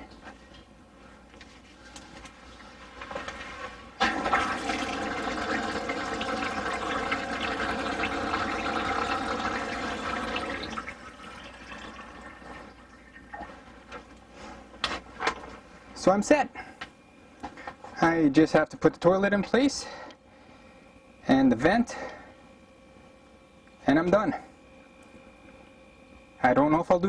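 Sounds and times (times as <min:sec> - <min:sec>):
water running from faucet into basin: 0:04.0 - 0:13.6.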